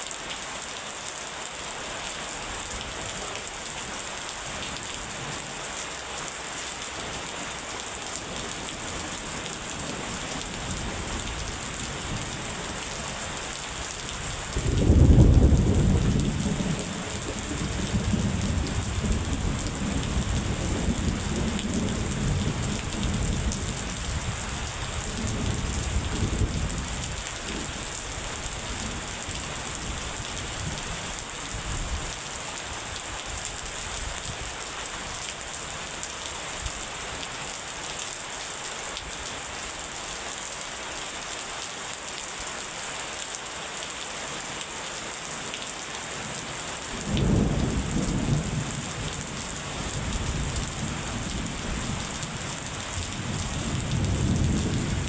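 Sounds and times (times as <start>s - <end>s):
steady rain: 0.0s - 55.0s
rolling thunder: 14.5s - 24.4s, 47.1s - 49.4s, 53.0s - 55.0s.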